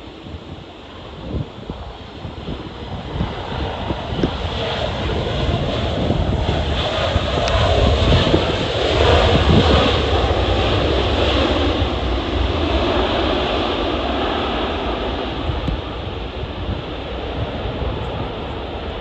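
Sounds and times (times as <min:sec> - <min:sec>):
jet airliner passing overhead: 0:00.0 - 0:19.0
wind buffeting microphone: 0:00.0 - 0:19.0.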